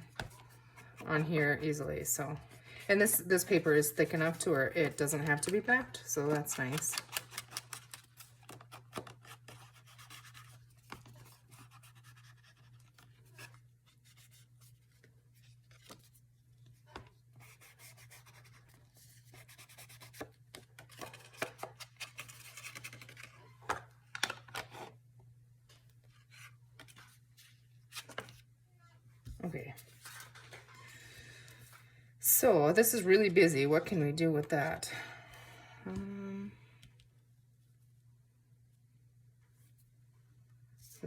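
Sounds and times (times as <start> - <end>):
scratching and rubbing on paper: 9.3 - 14.8, 17.4 - 20.3.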